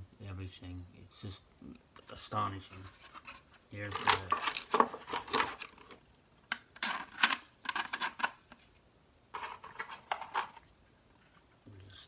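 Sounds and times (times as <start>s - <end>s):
plastic pieces clicking and rattling: 3.9s - 8.4s.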